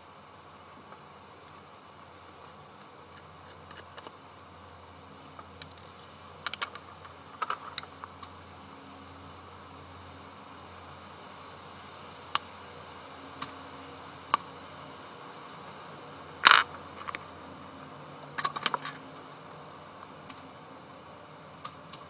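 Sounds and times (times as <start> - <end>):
steady low hum: 0.0 - 22.0
clicks of small hard objects: 2.8 - 4.2, 5.6 - 8.3, 16.4 - 17.3, 18.4 - 19.0.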